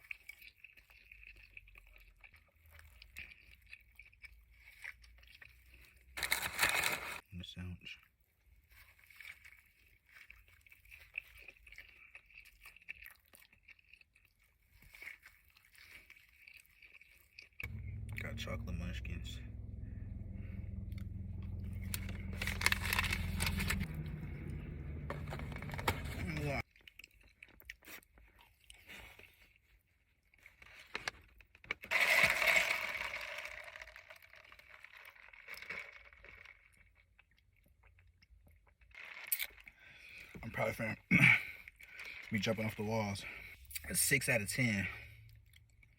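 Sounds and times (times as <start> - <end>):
chewing with mouth clicks: 0.0 - 6.2, 8.4 - 17.7, 26.6 - 30.7, 35.5 - 40.4
person eating: 8.8 - 17.6, 37.9 - 40.4.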